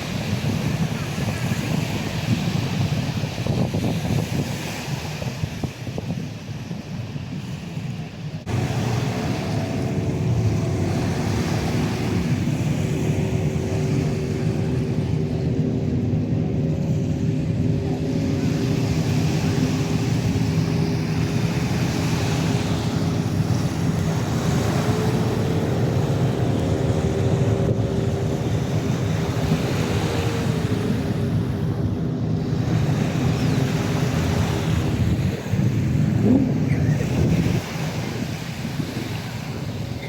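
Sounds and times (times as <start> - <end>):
wind and water rushing: 0.0 - 40.0
engine running: 8.4 - 40.0.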